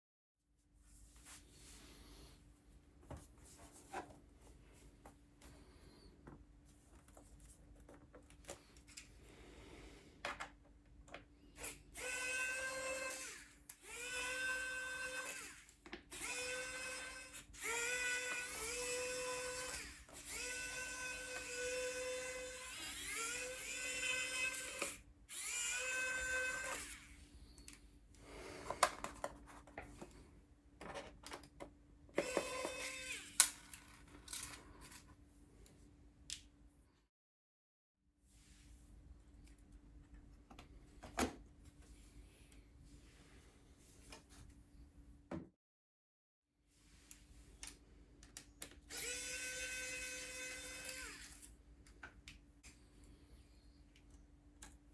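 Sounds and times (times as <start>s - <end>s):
electric screwdriver spinning: 11.6s - 27.2s, 32.2s - 34.5s, 48.9s - 51.5s.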